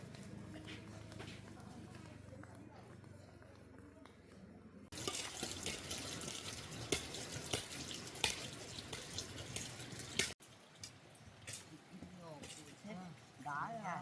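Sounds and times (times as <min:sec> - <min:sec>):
sharp clicks and drips: 0:04.9 - 0:13.8
running water splashing: 0:04.9 - 0:14.0.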